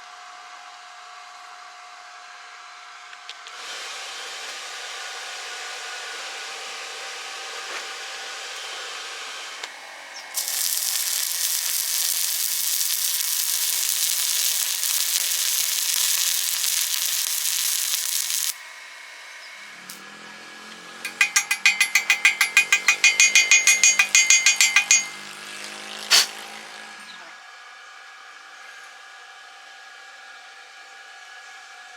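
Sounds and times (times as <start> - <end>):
welding arc crackling hiss: 10.4 - 18.6, 26.1 - 26.3
sharp metallic clicks: 21.1 - 25.2, 26.1 - 26.3.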